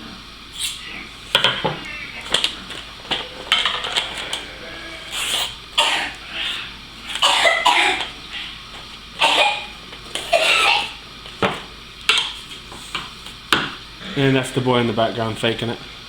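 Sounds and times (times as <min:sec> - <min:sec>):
boy fake coughing: 0:05.8 - 0:06.2, 0:07.1 - 0:08.2, 0:09.2 - 0:11.0.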